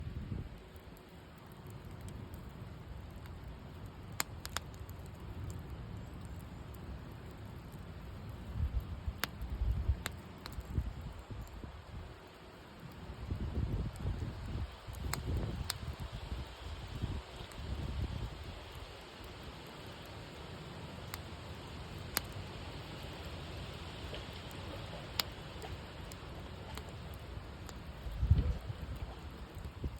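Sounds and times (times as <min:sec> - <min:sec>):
campfire hissing: 0:00.1 - 0:29.9
wood crackling pops: 0:00.6 - 0:20.4, 0:21.0 - 0:29.9
sharp fire pops: 0:13.3 - 0:16.1, 0:21.9 - 0:22.5, 0:24.0 - 0:29.9.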